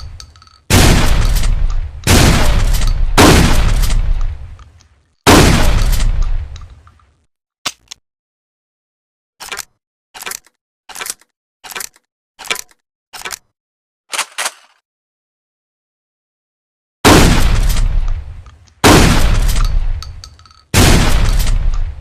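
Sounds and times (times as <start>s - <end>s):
loud shotgun shots: 0.7s - 4.6s, 5.3s - 6.5s, 17.0s - 18.0s, 18.8s - 19.9s, 20.7s - 21.9s
short mechanical clicks: 9.4s - 13.5s.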